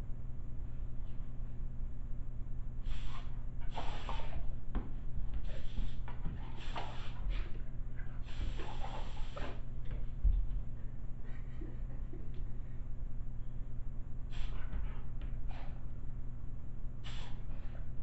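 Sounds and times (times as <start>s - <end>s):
steady low hum: 0.0s - 18.0s
compressed air blasts hissing: 2.9s - 4.4s, 8.2s - 9.6s, 17.0s - 17.4s.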